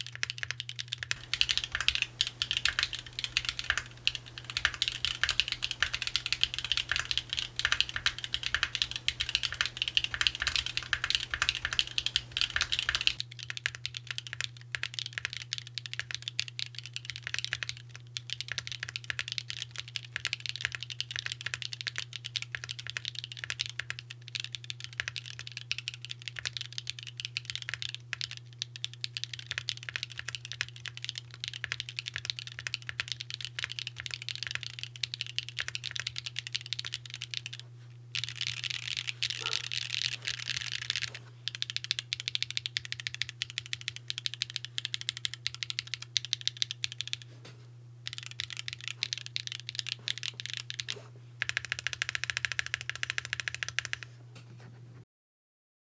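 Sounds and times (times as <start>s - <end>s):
mechanical keyboard typing: 0.0s - 37.6s, 38.2s - 47.3s, 48.1s - 54.2s
steady low hum: 1.1s - 13.2s.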